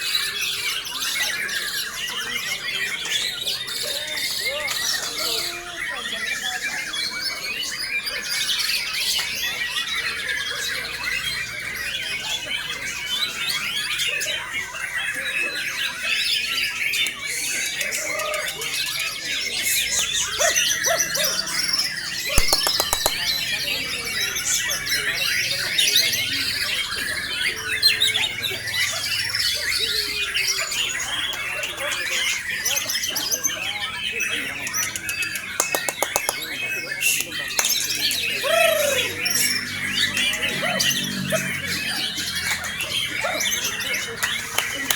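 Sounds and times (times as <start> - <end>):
bird singing rapid varied notes: 19.6 - 31.3, 32.4 - 41.1.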